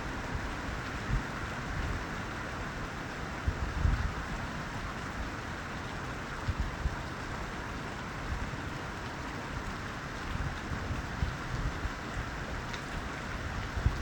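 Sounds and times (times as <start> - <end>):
steady rain falling: 0.0 - 14.0
wind buffeting microphone: 13.4 - 14.0.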